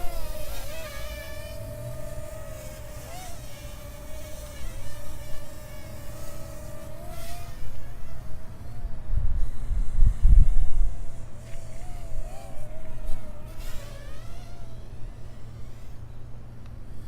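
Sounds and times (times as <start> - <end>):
quadcopter propellers buzzing: 0.0 - 17.0
wind rumble on microphone: 7.4 - 14.0.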